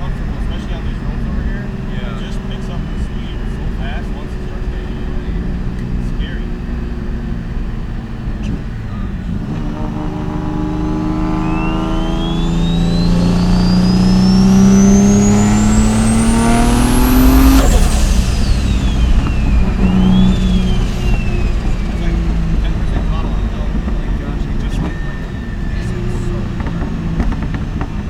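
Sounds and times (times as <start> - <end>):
car engine accelerating: 0.0 - 28.0
high turbo whine: 0.0 - 28.0.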